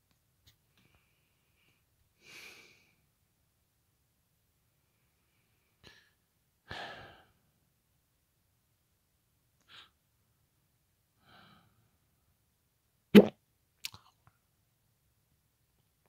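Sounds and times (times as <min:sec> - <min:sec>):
person hiccupping: 0:13.2 - 0:14.0.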